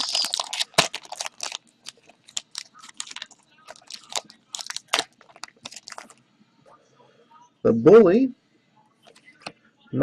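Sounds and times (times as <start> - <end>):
wrapper tearing and crinkling: 0.0 - 6.2.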